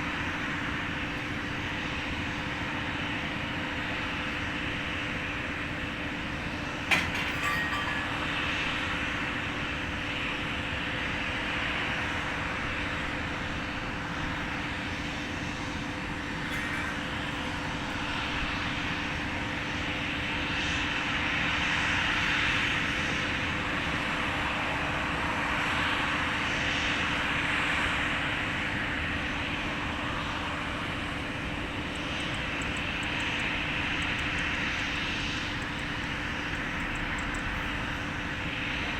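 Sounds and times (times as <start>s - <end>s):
jet engines roaring: 11.2s - 38.9s.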